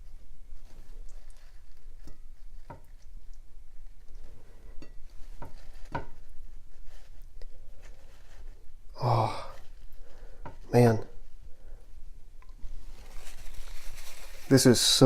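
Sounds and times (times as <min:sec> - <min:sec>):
paper towel rubbing a plate: 0:00.0 - 0:08.9, 0:12.6 - 0:15.0.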